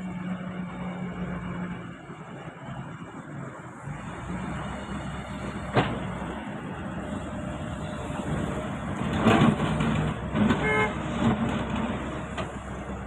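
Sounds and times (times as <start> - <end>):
engine and traffic noise: 0.0 - 13.0
vehicle horn toot: 10.6 - 11.0.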